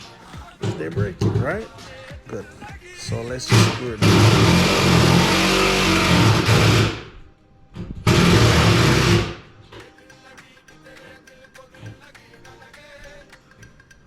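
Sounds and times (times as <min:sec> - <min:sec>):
power drill driving screws into wood: 0:03.6 - 0:07.2, 0:08.0 - 0:09.5.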